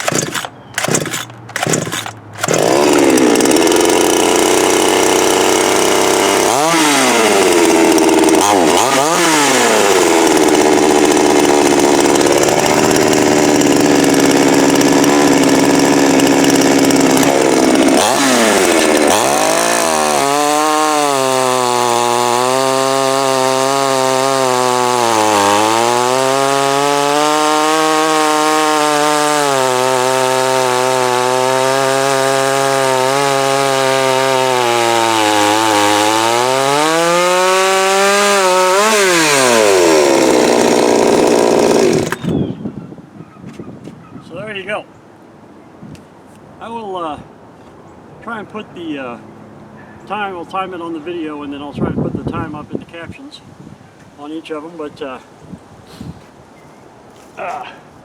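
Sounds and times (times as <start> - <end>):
chainsaw engine revving: 0.0 - 42.4
chainsaw pull-start: 0.0 - 42.4.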